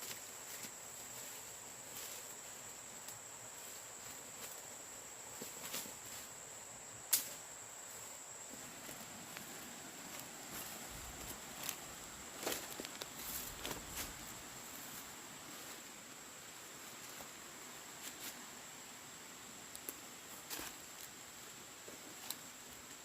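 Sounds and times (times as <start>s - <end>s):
insects high-pitched drone: 0.0s - 23.0s.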